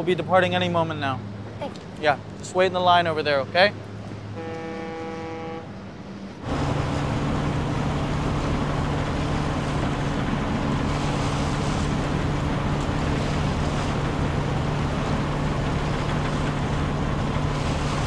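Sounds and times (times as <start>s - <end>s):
engine drone with rushing noise: 0.0s - 18.0s
horn-like tone: 4.3s - 5.8s.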